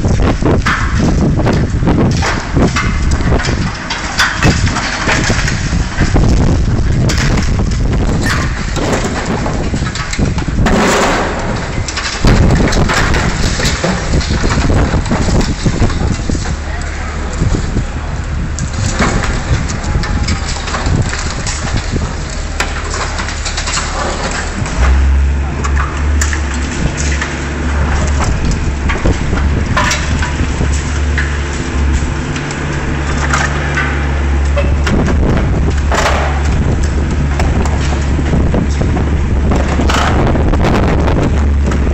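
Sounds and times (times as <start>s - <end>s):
excavator crunching and clattering: 0.0s - 41.9s.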